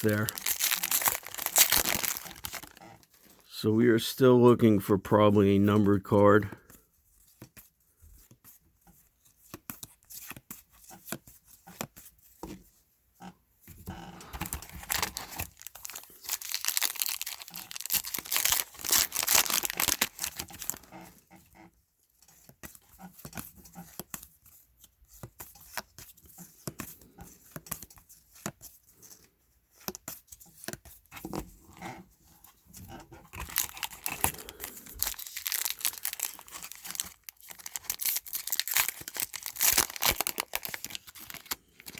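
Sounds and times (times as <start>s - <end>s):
card pack wrappers tearing: 0.0s - 3.4s, 14.4s - 20.9s, 33.4s - 41.9s
cards rustling: 0.0s - 3.5s, 14.2s - 20.9s, 33.3s - 41.9s.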